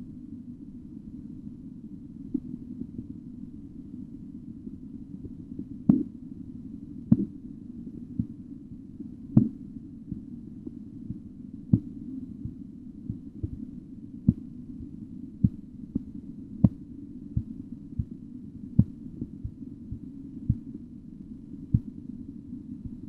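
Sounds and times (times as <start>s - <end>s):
steady low rumble: 0.0s - 23.0s
heartbeat taps through stethoscope: 5.2s - 6.1s, 7.1s - 7.3s, 8.2s - 8.4s, 9.4s - 13.7s, 14.3s - 16.8s, 18.8s - 20.7s, 21.7s - 22.0s.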